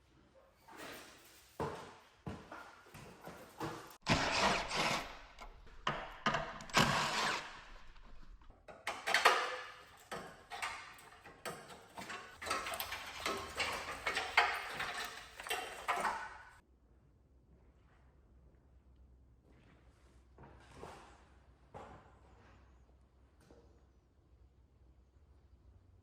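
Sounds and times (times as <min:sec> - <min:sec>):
irregular knocks and clatter: 0:01.6 - 0:16.6
scraping: 0:03.7 - 0:16.6.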